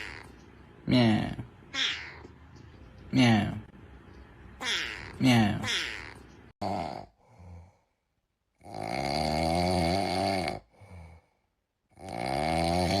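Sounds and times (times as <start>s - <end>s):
person snoring: 6.6s - 8.0s, 8.6s - 13.0s.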